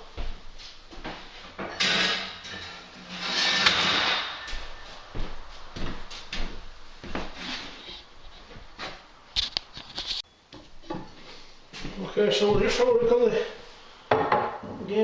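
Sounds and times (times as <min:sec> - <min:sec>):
tools scraping: 0:01.2 - 0:04.9, 0:07.2 - 0:11.2.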